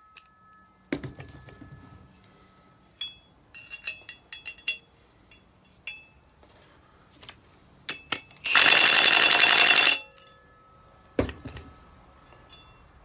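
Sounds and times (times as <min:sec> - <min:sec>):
thump: 0:00.9 - 0:01.9, 0:11.2 - 0:11.8
metal parts clinking: 0:00.9 - 0:06.1, 0:07.9 - 0:10.2, 0:11.2 - 0:12.9
impact wrench rattling: 0:08.0 - 0:10.0, 0:11.2 - 0:11.8.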